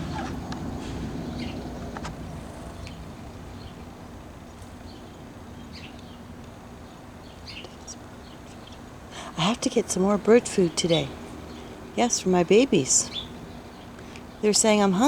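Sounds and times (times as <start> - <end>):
distant engine rumble: 0.0 - 15.0
bird chirps: 10.6 - 14.5.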